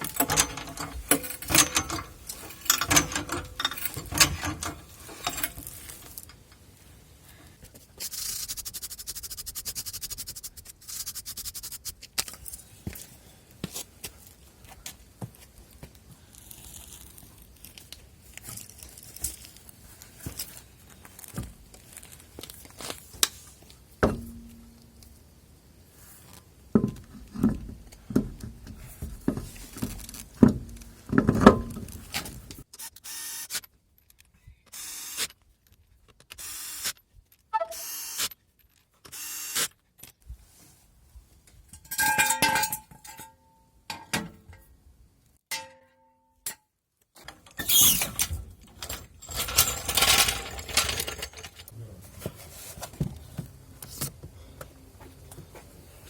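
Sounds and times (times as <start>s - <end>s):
hand tools clinking on metal: 0.0s - 6.6s, 41.7s - 44.2s, 47.2s - 51.7s.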